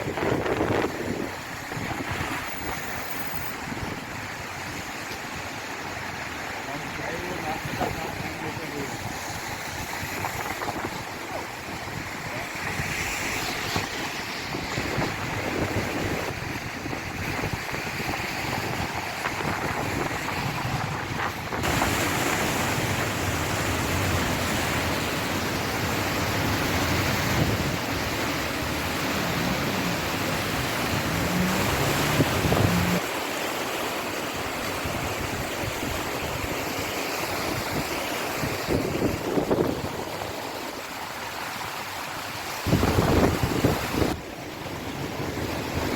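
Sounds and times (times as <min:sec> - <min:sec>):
wind buffeting microphone: 0:00.0 - 0:02.5, 0:07.4 - 0:33.0, 0:42.6 - 0:45.9
river water rushing: 0:00.0 - 0:45.9.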